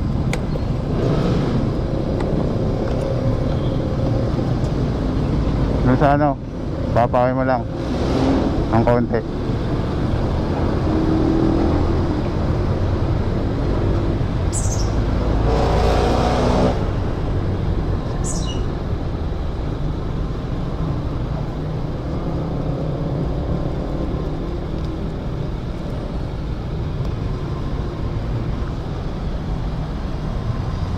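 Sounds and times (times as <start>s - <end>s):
road and wind noise: 0.0s - 30.9s
vehicle engine rumble: 0.0s - 30.9s
short high squeaks: 18.2s - 18.8s.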